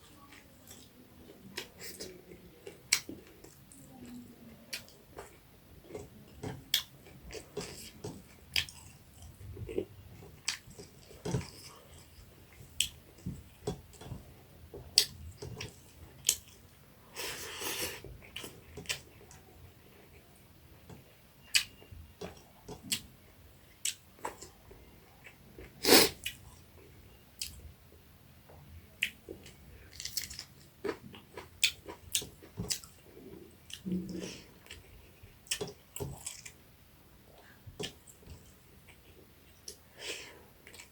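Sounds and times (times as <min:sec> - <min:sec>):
person chewing food: 0:00.3 - 0:27.6, 0:29.0 - 0:36.6, 0:37.3 - 0:40.9.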